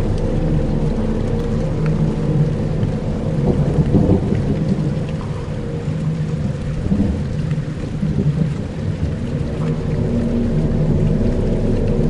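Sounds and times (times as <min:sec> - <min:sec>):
held low tones: 0:00.0 - 0:07.5
deep rumbling drone: 0:00.0 - 0:12.0.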